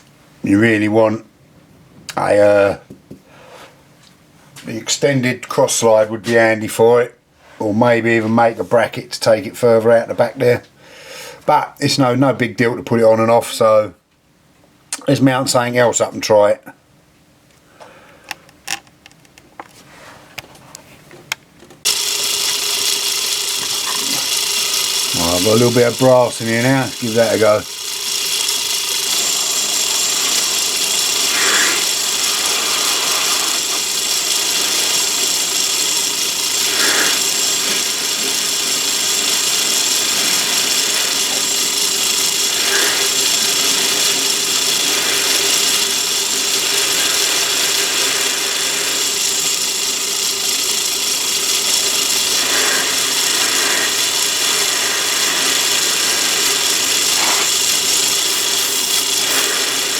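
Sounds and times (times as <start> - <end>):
lathe cutting metal bar: 21.9 - 59.9.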